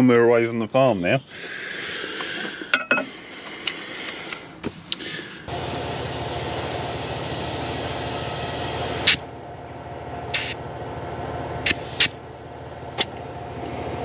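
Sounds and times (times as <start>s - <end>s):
diesel tractor engine running: 2.1s - 14.0s.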